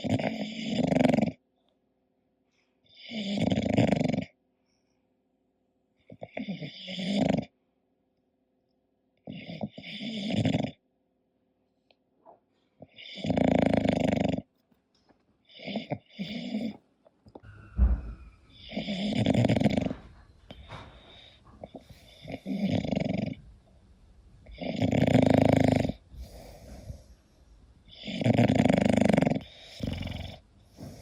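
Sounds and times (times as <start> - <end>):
dog snoring: 0.0 - 1.4, 2.9 - 4.4, 6.1 - 7.5, 9.2 - 10.8, 12.8 - 14.5, 15.4 - 16.8, 17.4 - 23.5, 24.4 - 27.2, 27.8 - 31.0
brief low thump: 17.4 - 18.4.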